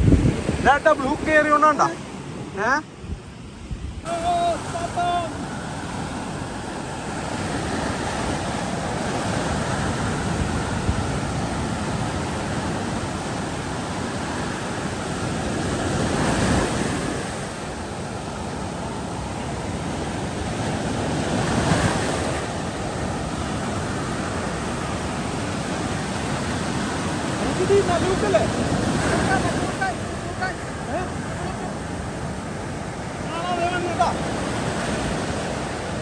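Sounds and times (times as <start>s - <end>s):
wind rushing: 0.0s - 12.3s
sea water rushing: 0.0s - 36.0s.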